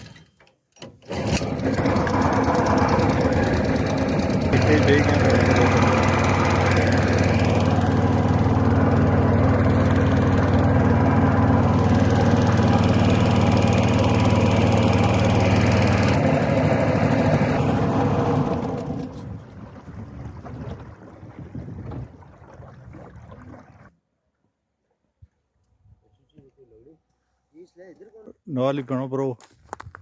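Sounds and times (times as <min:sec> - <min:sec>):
boat engine running: 0:01.1 - 0:23.9.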